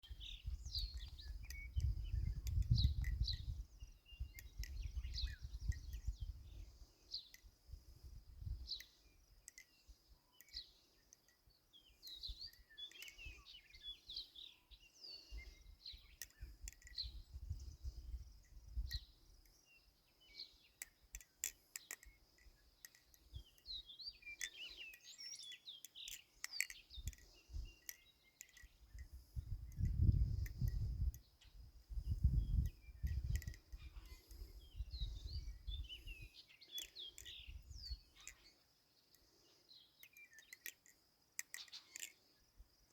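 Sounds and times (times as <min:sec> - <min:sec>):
birds chirping: 0:00.0 - 0:42.9
knife handles clicking: 0:16.0 - 0:17.2, 0:20.8 - 0:31.2, 0:32.6 - 0:34.6, 0:40.0 - 0:42.2.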